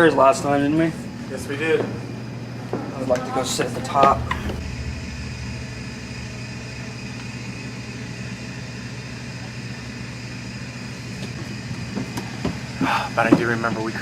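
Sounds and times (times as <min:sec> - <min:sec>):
low mechanical hum: 0:03.8 - 0:08.1.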